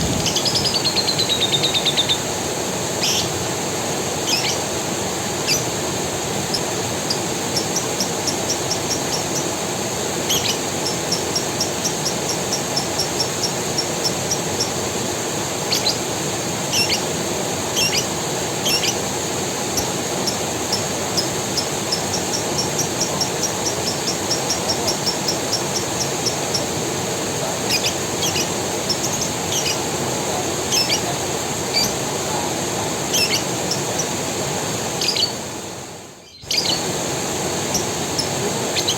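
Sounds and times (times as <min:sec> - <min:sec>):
birds chirping: 0:00.0 - 0:38.9
creek running: 0:00.0 - 0:38.9
high insect buzz: 0:05.4 - 0:14.9, 0:17.7 - 0:26.9, 0:27.6 - 0:30.0.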